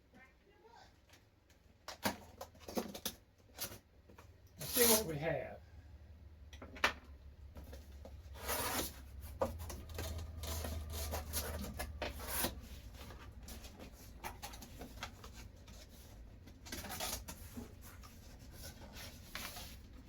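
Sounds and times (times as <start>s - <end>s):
cardboard box rustling and scraping: 7.6s - 20.0s.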